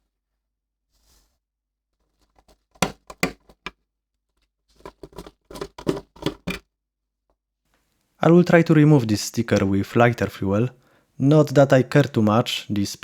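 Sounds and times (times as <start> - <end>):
hard parts clicking and knocking: 2.4 - 3.7, 4.8 - 6.6.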